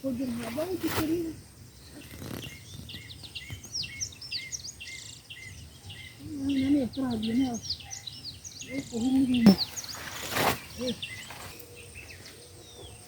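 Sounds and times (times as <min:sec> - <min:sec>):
birds chirping and whistling: 0:00.1 - 0:13.0
brief rustle: 0:09.5 - 0:11.7.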